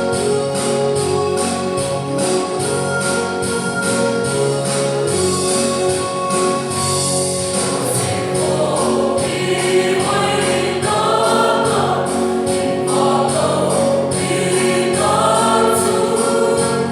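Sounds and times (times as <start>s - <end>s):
instrumental backing with percussion beat: 0.0s - 16.9s
choir singing gospel: 6.6s - 16.9s.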